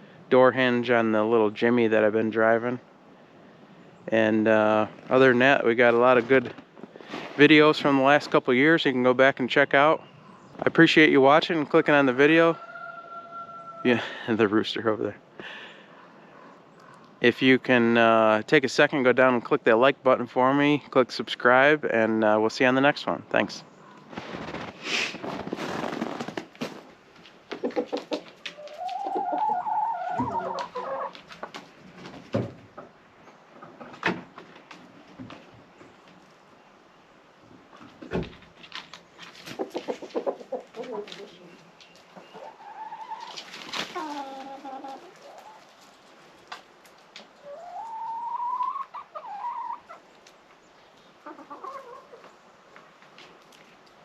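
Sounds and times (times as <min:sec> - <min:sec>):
chickens calling: 0:09.7 - 0:14.4, 0:15.4 - 0:17.3, 0:23.6 - 0:36.3, 0:38.7 - 0:53.8
rooster crowing: 0:12.6 - 0:13.9.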